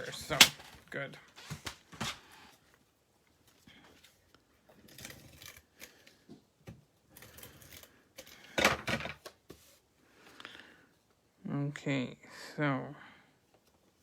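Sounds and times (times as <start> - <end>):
paper rustling: 0.0 - 2.7.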